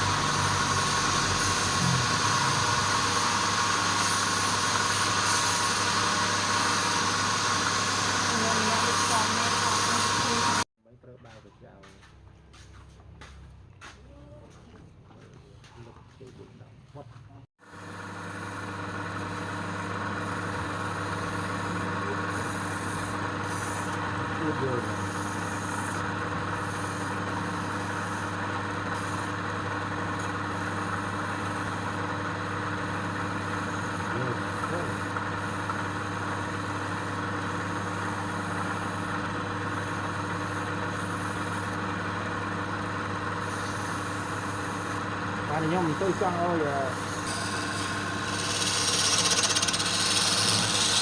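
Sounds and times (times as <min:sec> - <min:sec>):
machine motor droning: 0:00.0 - 0:10.6, 0:17.7 - 0:51.0.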